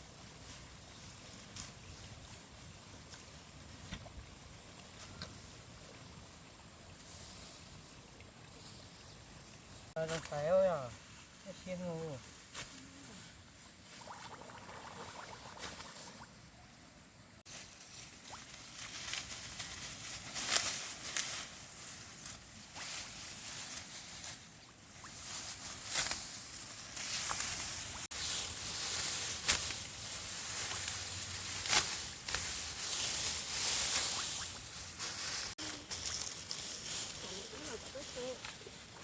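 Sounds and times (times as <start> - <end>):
rustling with crackles and taps: 17.5 - 39.0.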